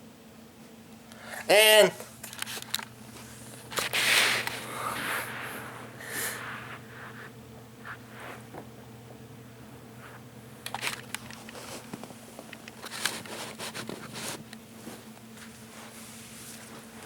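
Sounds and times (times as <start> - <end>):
steady low hum: 0.0 - 17.0
rustling and scraping: 2.2 - 8.6, 10.0 - 17.0.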